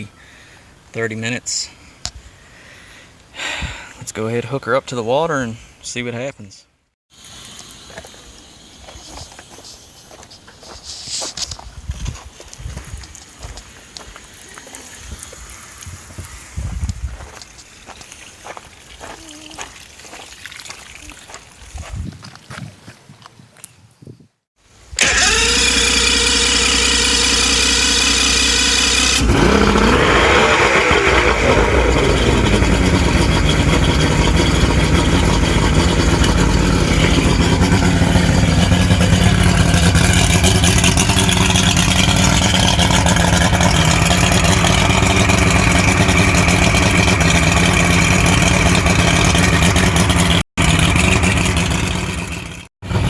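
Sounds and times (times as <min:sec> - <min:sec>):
outboard motor running: 0:25.0 - 0:53.0.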